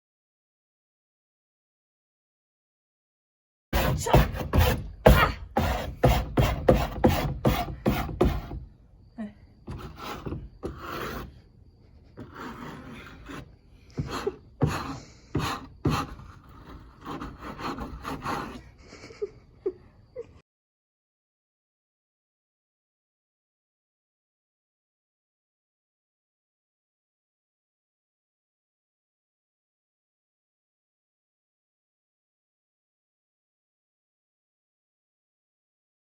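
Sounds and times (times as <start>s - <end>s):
foam being scraped off a board: 3.8s - 8.6s, 9.7s - 18.8s.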